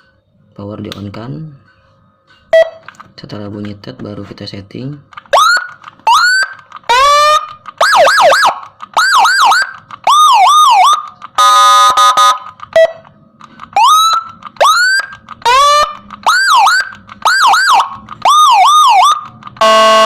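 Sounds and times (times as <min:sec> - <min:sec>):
electronic siren whoops and wails: 0:05.3 - 0:13.1, 0:13.8 - 0:20.0
buzzing horn tone: 0:19.6 - 0:20.0.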